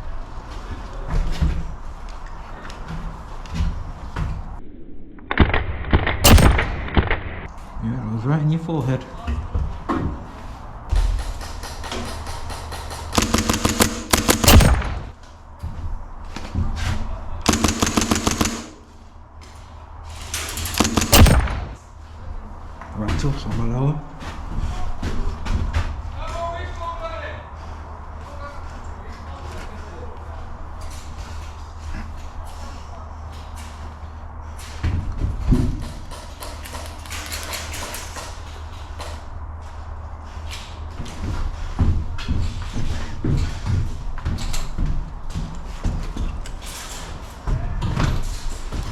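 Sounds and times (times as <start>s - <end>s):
steady low hum: 4.4s - 8.2s, 12.6s - 16.8s, 17.4s - 22.6s
airsoft guns firing bursts: 6.0s - 7.5s, 11.3s - 15.2s, 17.5s - 19.1s, 20.5s - 21.8s.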